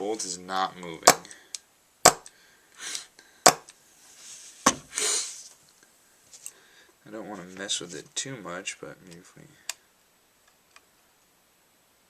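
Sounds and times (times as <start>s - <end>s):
short hissy sounds: 4.0s - 5.6s.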